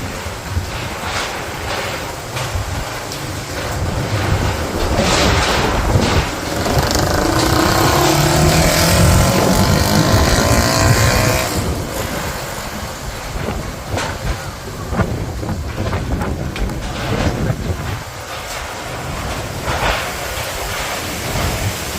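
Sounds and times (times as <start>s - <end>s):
knocks and clatters: 0.0s - 21.9s
strong gusting wind: 0.0s - 21.9s
pitched whine: 5.6s - 12.8s.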